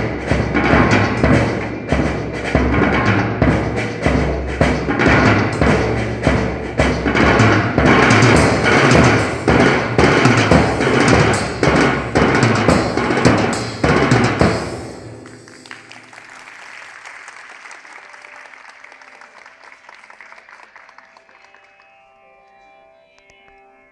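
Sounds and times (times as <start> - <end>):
fast galloping hand drumming: 0.0 - 16.2.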